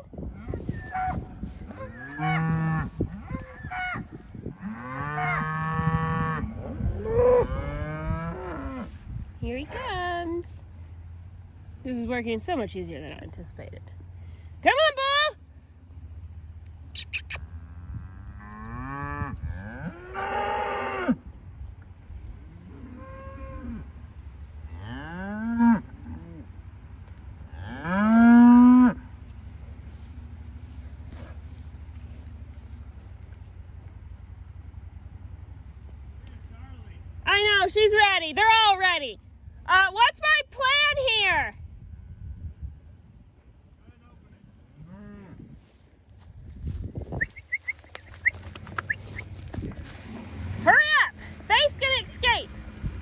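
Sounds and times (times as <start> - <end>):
cattle mooing: 0.4 - 9.0, 17.9 - 21.2, 27.6 - 29.1.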